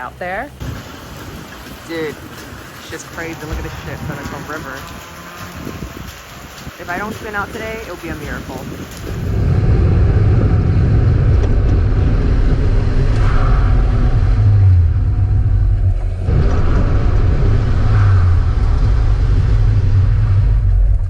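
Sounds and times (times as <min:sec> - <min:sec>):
car engine accelerating: 0:09.0 - 0:21.0.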